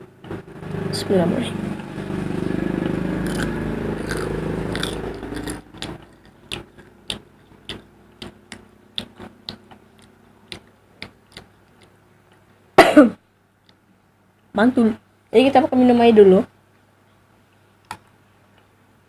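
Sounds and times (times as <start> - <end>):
engine drone: 0.0 - 9.5
crunchy chewing of fried chicken: 3.2 - 11.9.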